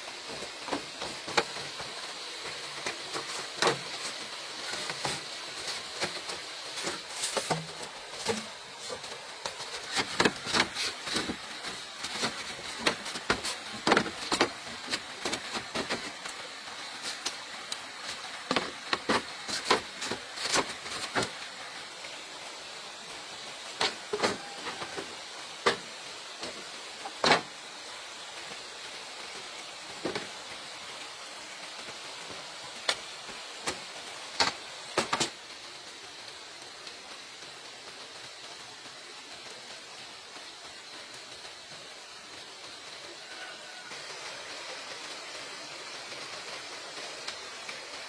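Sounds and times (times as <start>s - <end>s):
faint steady hiss: 0.0s - 48.0s
knocks and clicks of manual work: 0.2s - 22.0s, 23.7s - 27.6s, 30.0s - 30.4s, 32.8s - 35.4s.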